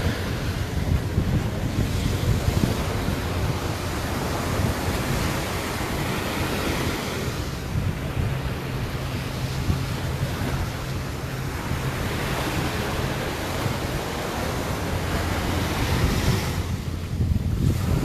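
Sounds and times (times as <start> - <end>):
ocean surf breaking on beach: 0.0 - 18.0
wind buffeting microphone: 0.0 - 18.0.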